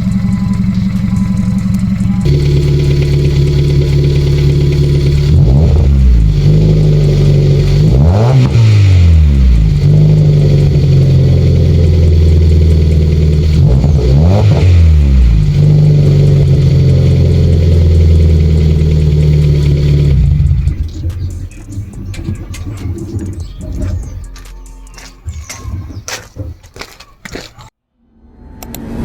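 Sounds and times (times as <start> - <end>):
loud car engine revving: 0.0 - 21.6.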